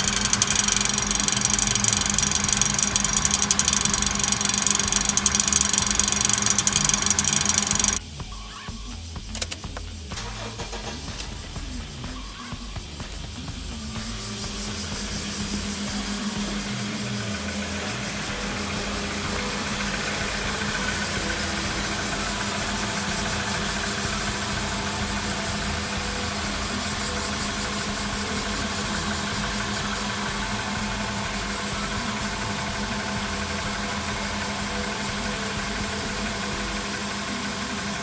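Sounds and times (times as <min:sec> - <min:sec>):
fast regular clicking: 0:00.0 - 0:08.0, 0:09.3 - 0:11.4, 0:13.9 - 0:38.0
car engine idling: 0:00.0 - 0:08.1, 0:09.2 - 0:38.0.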